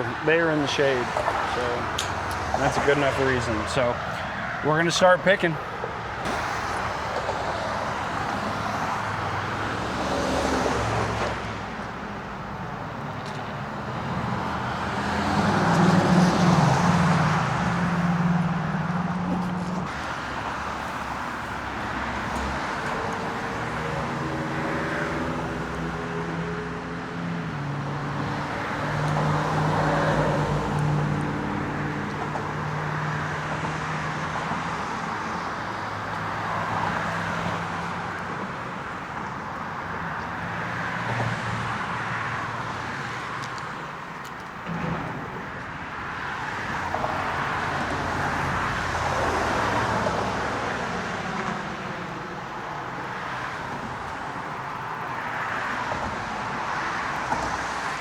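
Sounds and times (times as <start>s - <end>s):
road traffic passing: 0.0s - 58.0s.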